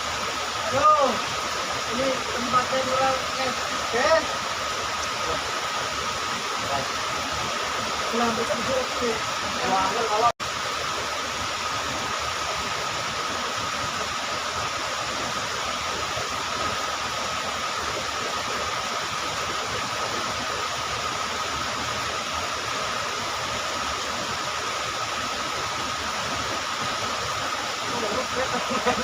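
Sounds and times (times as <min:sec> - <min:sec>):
river water rushing: 0:00.0 - 0:29.0.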